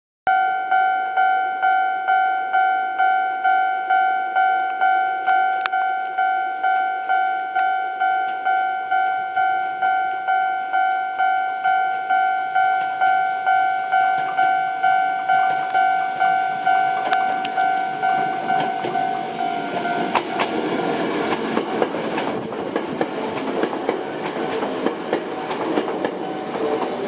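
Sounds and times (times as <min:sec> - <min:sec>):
level crossing bell dinging: 0:00.3 - 0:20.2.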